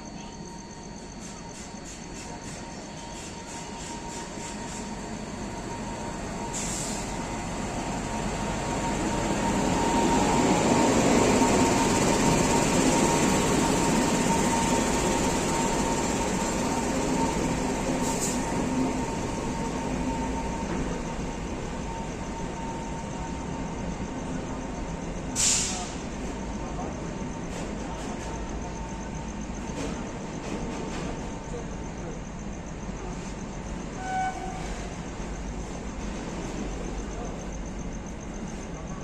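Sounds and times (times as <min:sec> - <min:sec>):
train passing: 0:01.0 - 0:39.0
brief high hisses: 0:25.4 - 0:26.0.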